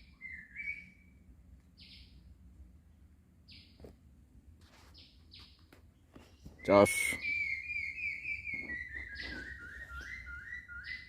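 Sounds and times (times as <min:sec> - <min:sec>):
buzzy bird calls: 0:06.2 - 0:11.0.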